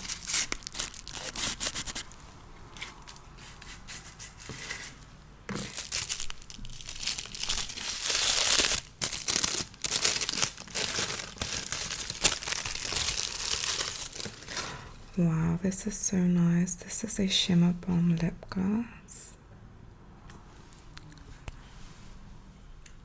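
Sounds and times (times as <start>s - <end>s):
packaging crinkling and tearing: 0.0s - 2.2s, 5.6s - 14.8s.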